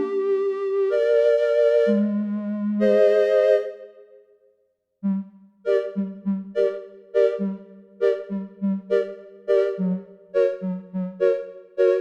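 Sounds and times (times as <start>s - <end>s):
synthesizer sustained notes: 5.0s - 12.0s.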